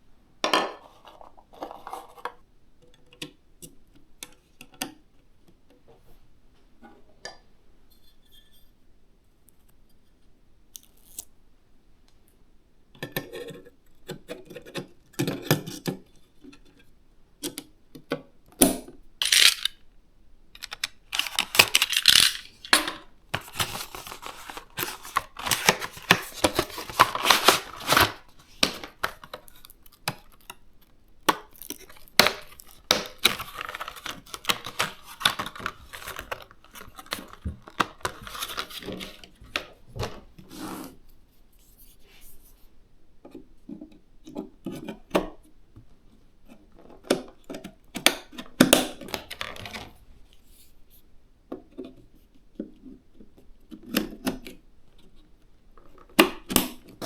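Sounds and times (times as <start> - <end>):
packaging rustling and tearing: 19.2 - 19.8, 20.6 - 30.6, 31.4 - 40.2.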